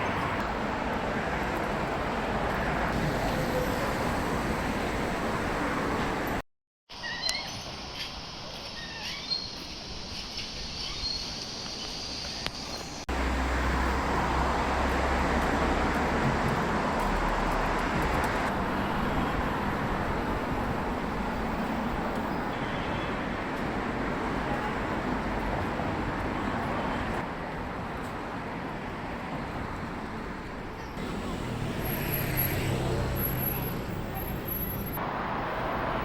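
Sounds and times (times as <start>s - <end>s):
street traffic roar: 0.0s - 6.4s, 7.0s - 36.0s.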